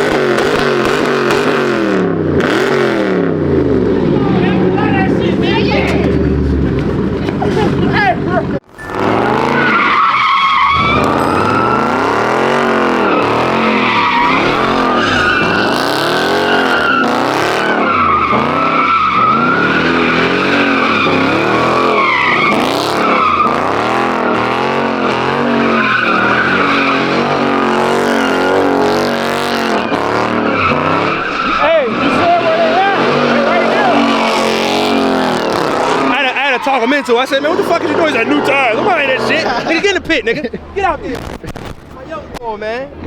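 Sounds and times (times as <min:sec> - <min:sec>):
car engine revving: 0:00.0 - 0:43.0
tyres screeching: 0:04.0 - 0:43.0.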